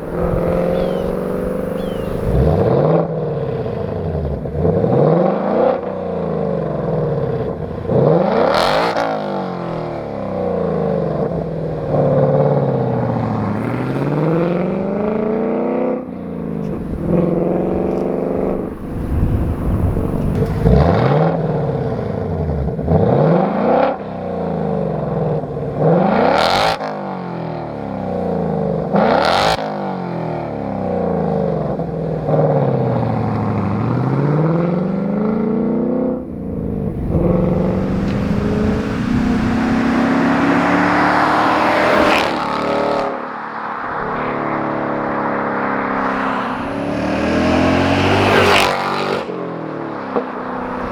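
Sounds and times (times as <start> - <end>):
exhaust cracks: 0.0 - 2.8, 13.4 - 21.3, 36.2 - 42.6, 45.8 - 49.3
car accelerating past: 0.0 - 24.8, 32.8 - 50.9
car engine revving: 0.0 - 26.8, 32.8 - 50.9.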